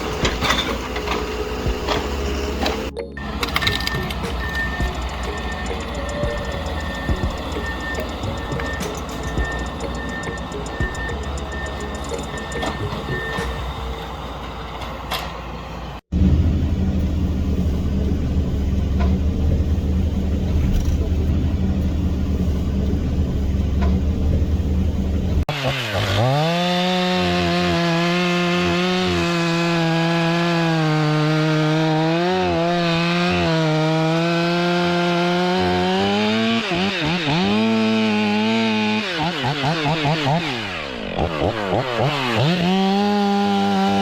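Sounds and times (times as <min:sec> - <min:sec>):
chainsaw cutting wood: 0:00.0 - 0:13.7, 0:25.5 - 0:44.0
heavy machine engine rumble: 0:00.0 - 0:25.4.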